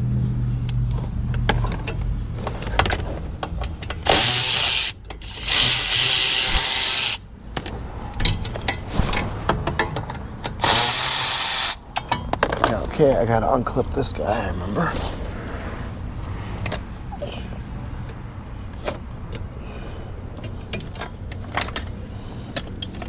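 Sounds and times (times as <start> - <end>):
parts being handled: 0.7 - 12.9, 20.2 - 23.0
power ratchet spinning: 4.0 - 7.3, 10.6 - 11.8.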